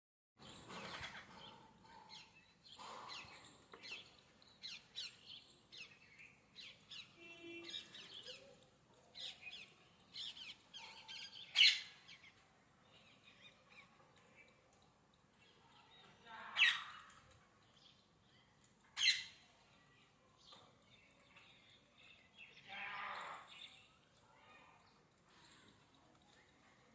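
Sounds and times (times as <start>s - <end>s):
parrot chirping and squawking: 11.5s - 12.0s, 16.6s - 17.0s, 19.0s - 19.4s.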